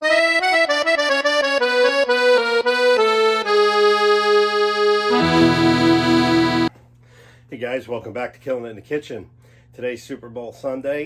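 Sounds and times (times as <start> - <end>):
instrumental intro music: 0.0 - 6.7.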